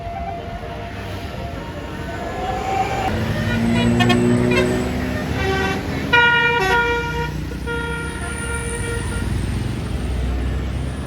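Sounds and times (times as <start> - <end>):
bus engine rumble: 0.0 - 11.0
melodic air horn tune: 3.2 - 9.1.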